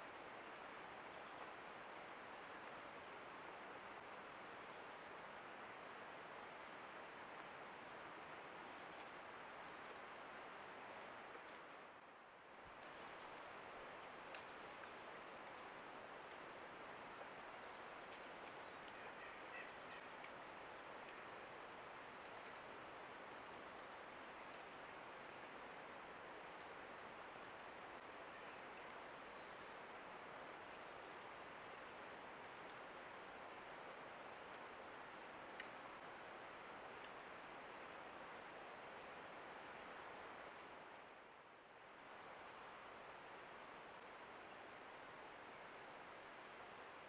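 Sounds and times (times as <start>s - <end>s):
flowing creek water: 0.0s - 47.0s
tiny ticks: 13.9s - 16.4s, 32.6s - 32.9s, 35.5s - 35.8s, 37.0s - 38.2s.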